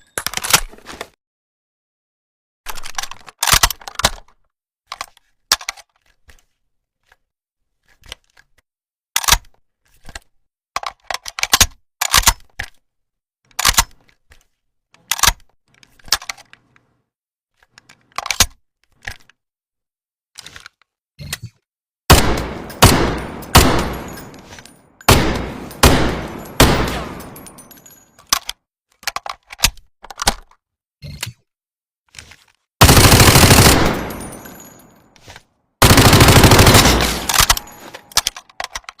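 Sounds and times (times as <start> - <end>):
submachine gun bursts: 32.8 - 34.5, 35.8 - 38.2
submachine gun mechanical clicks: 35.8 - 38.9.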